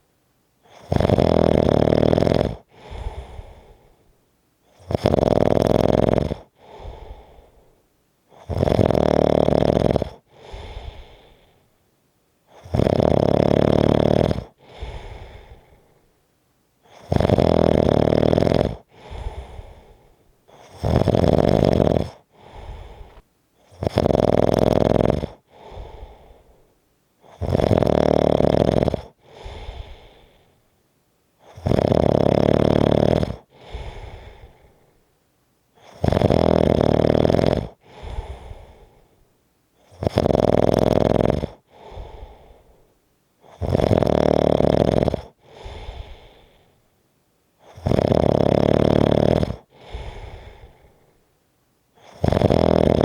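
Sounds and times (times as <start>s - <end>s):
loud snoring: 0.6s - 3.8s, 4.7s - 7.5s, 8.3s - 11.4s, 12.5s - 15.9s, 16.8s - 26.6s, 27.2s - 30.4s, 31.4s - 34.9s, 35.8s - 39.0s, 39.8s - 42.8s, 43.4s - 46.6s, 47.6s - 51.0s, 52.0s - 53.0s
soft breath: 2.6s - 4.9s, 6.4s - 8.5s, 10.2s - 12.7s, 14.4s - 17.2s, 18.7s - 21.1s, 22.0s - 23.8s, 25.2s - 27.4s, 29.1s - 30.8s, 33.4s - 36.1s, 37.7s - 40.2s, 41.5s - 43.7s, 45.2s - 47.0s, 49.5s - 52.3s.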